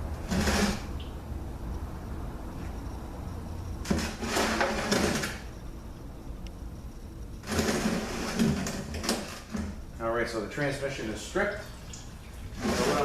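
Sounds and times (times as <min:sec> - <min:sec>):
steady low hum: 0:00.0 - 0:13.0
metal sliding and scraping: 0:00.2 - 0:00.9, 0:03.8 - 0:05.5, 0:07.4 - 0:09.8, 0:12.5 - 0:13.0.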